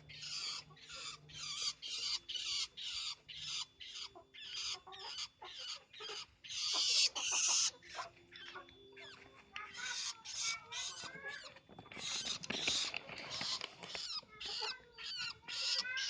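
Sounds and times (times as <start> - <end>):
shrike harsh rasping calls: 0.0 - 8.5, 12.0 - 16.0.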